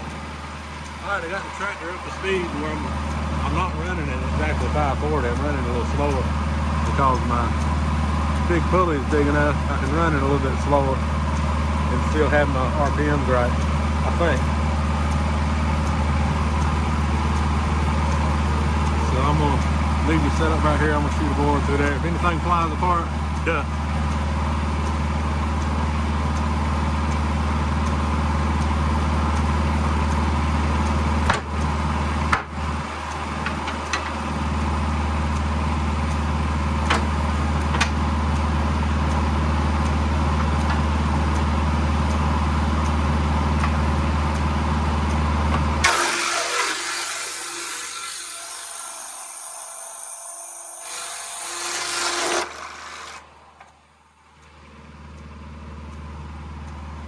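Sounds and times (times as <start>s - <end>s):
sawmill edger humming: 0.0s - 53.9s
sharp knocks of board: 31.3s - 31.5s.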